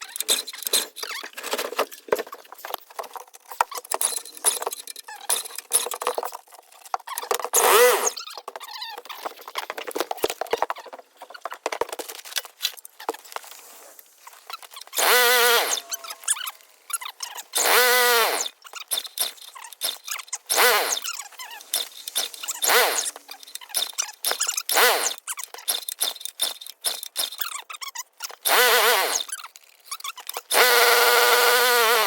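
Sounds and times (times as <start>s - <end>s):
recoil starter rope whirring: 7.6s - 8.2s, 15.0s - 16.5s, 17.5s - 27.3s, 28.4s - 29.3s, 30.4s - 32.0s.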